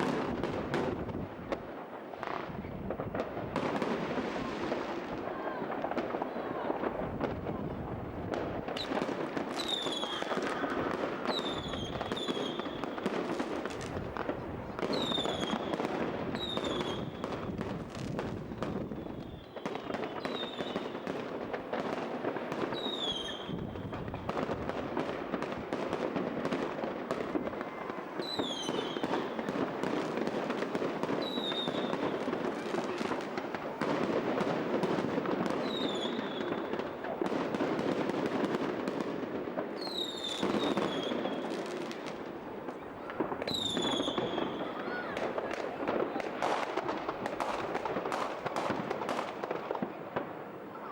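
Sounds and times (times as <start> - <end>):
fireworks crackling and banging: 0.0 - 50.9
falling firework whistles: 8.8 - 21.2, 22.6 - 24.3, 28.2 - 29.6, 31.1 - 32.3, 35.4 - 36.8, 39.8 - 42.1, 43.1 - 45.6.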